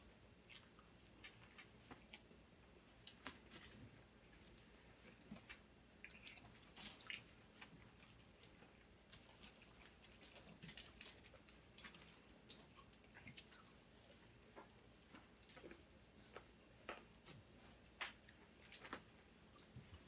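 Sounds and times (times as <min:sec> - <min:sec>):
soft chewing: 0:00.0 - 0:20.0
small mouth clicks and smacks: 0:04.0 - 0:13.8.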